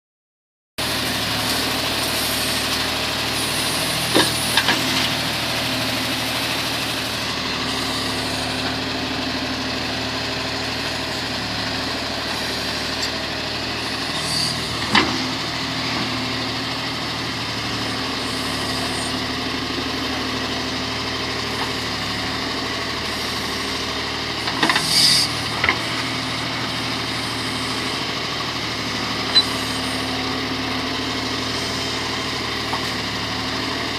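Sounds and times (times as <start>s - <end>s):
diesel engine idling: 0.8s - 33.9s.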